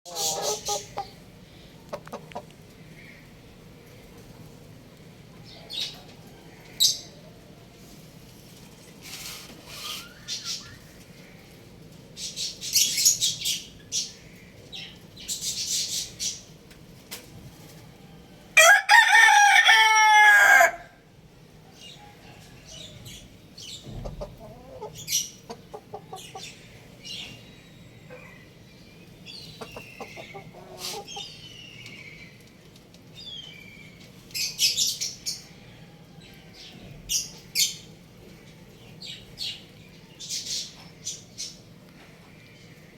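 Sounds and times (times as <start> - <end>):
chicks chirping: 0.1 - 1.2, 23.1 - 32.4
rooster crowing: 18.6 - 21.0.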